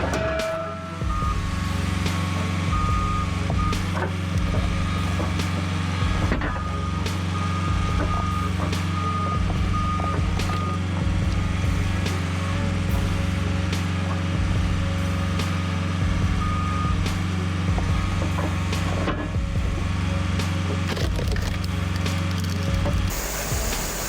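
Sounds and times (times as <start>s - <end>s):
heavy diesel machine running: 0.0s - 24.0s
backup alarm beeps: 2.7s - 3.9s, 6.6s - 10.8s.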